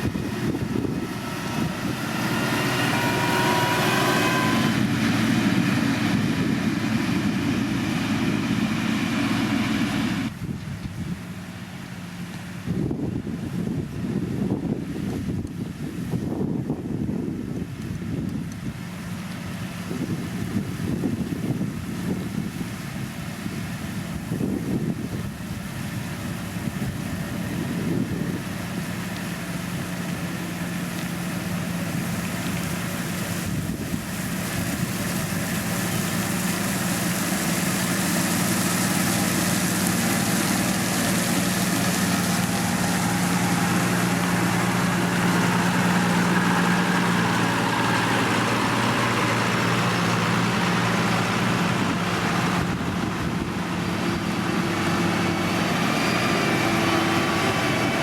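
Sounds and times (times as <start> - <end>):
wind buffeting microphone: 0.0 - 9.0, 12.6 - 58.0
diesel engine running: 0.0 - 58.0.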